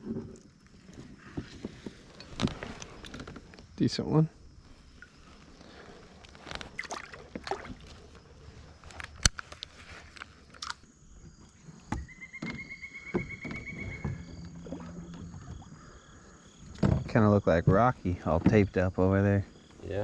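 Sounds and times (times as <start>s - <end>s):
knocks and rattles in a boat: 11.8s - 19.4s.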